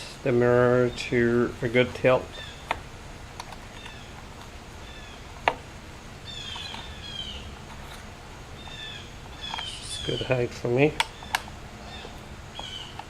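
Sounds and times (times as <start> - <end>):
birds chirping: 0.0 - 13.0
sharp click: 11.0 - 11.5.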